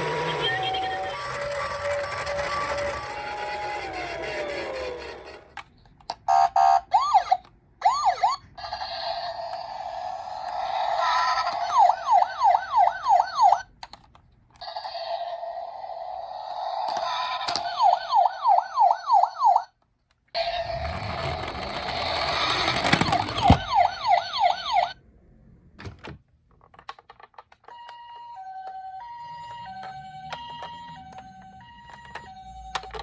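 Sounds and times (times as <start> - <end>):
two-tone ambulance siren: 0.0 - 5.4, 6.3 - 13.7, 16.1 - 19.7, 22.0 - 25.0, 27.7 - 33.0
toy siren yelp wail: 0.0 - 5.5, 6.3 - 13.7, 14.6 - 19.7, 20.4 - 25.0, 27.7 - 33.0
toy clicks: 0.0 - 6.3, 16.7 - 18.3, 21.2 - 24.6, 26.8 - 33.0.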